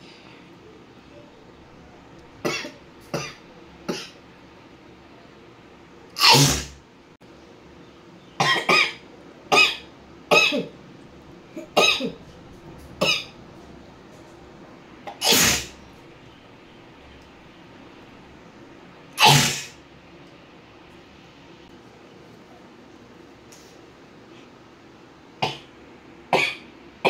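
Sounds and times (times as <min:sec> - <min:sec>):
woman coughing: 0:08.4 - 0:10.7, 0:11.6 - 0:12.2.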